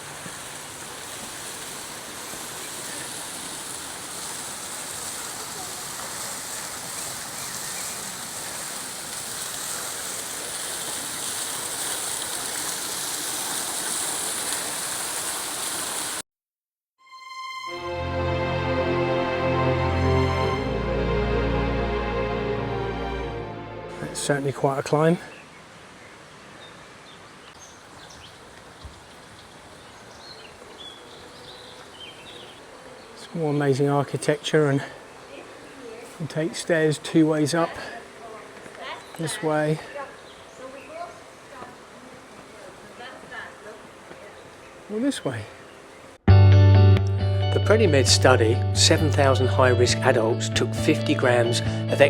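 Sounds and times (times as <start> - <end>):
fountain water splashing: 0.0 - 16.2
outdoor background hiss: 0.0 - 16.2, 17.7 - 46.2.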